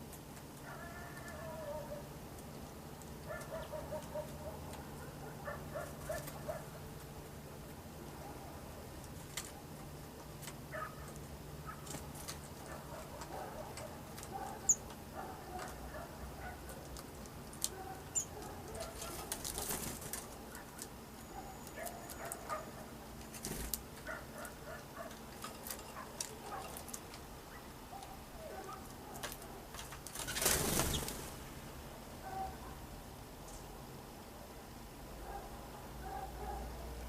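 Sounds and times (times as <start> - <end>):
soft bird calls: 17.9 - 19.8
bird wing flutters: 30.1 - 31.4
rush of wing flapping: 30.2 - 31.4.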